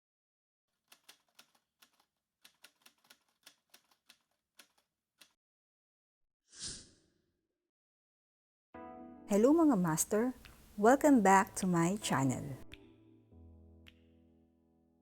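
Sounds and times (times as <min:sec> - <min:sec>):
faint keyboard typing: 0:00.8 - 0:04.9, 0:10.1 - 0:12.6.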